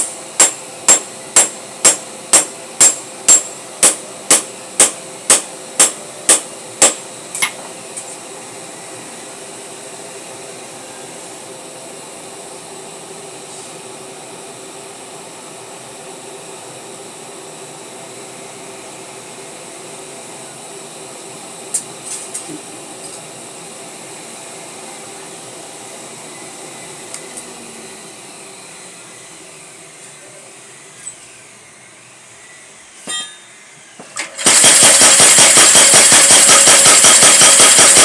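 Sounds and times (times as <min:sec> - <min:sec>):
power hammer striking metal: 0:00.0 - 0:07.7, 0:33.0 - 0:38.0
steady background hum: 0:00.0 - 0:35.2.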